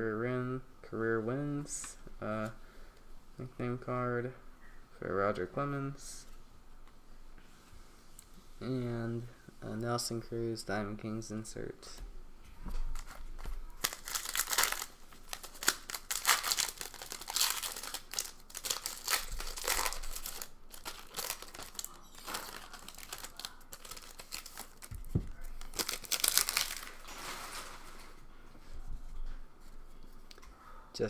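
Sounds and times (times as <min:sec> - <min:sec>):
paper cards rustling: 0:12.8 - 0:28.2
foil wrapper tearing and crinkling: 0:12.9 - 0:28.2.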